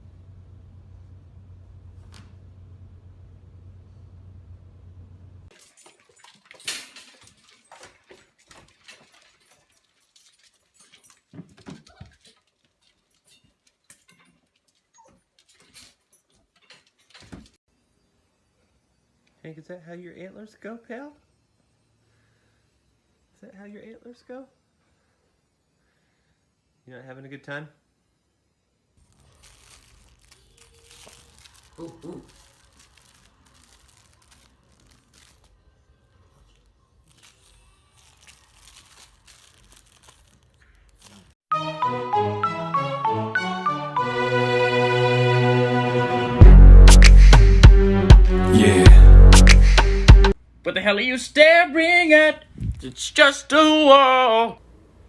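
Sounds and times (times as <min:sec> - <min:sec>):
animal clicks and rustling: 0:05.5 - 0:17.6
faint rustling and crinkling: 0:05.5 - 0:17.6, 0:29.0 - 0:41.4.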